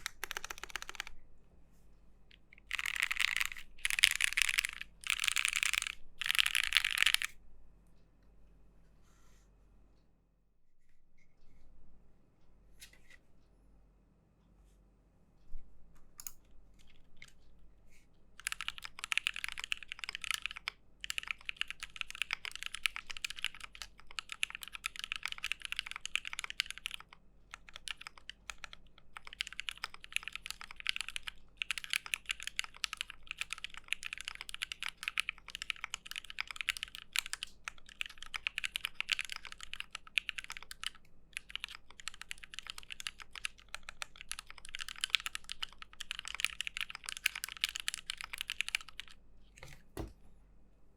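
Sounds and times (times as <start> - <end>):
mechanical keyboard typing: 0.0 - 1.2, 2.3 - 7.4, 16.2 - 17.4, 18.4 - 50.1.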